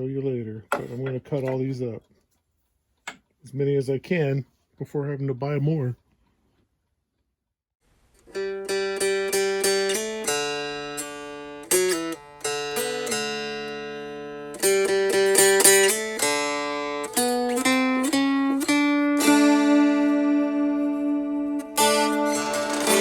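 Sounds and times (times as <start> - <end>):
plucked string melody: 8.2 - 23.0.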